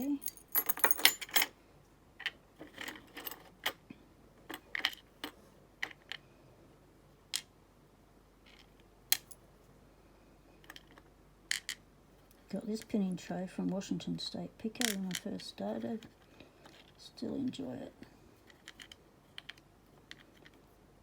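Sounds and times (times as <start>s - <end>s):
small metal parts clicking and tinkling: 0.0s - 1.5s.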